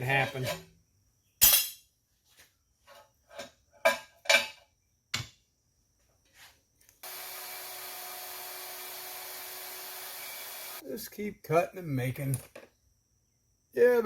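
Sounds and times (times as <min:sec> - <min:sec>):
power tool humming: 0:07.0 - 0:10.8.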